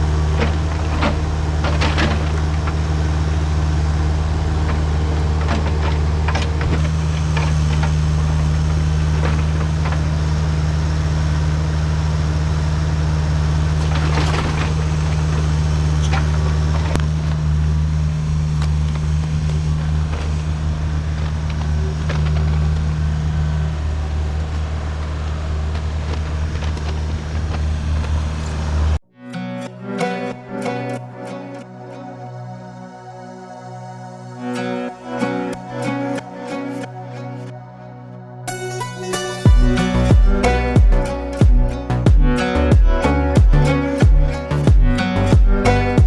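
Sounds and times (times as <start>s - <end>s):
diesel engine running: 0.0s - 29.0s, 39.5s - 46.0s
sharp knocks: 39.5s - 45.6s.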